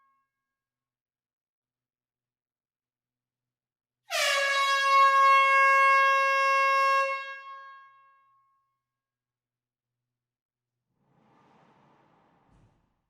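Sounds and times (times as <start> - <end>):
air horn blast in hall: 4.1 - 7.6.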